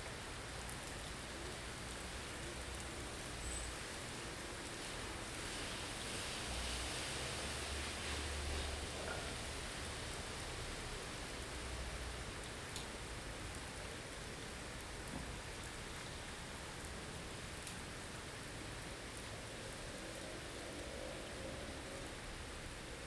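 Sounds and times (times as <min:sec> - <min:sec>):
faint ticks: 0:12.7 - 0:12.9.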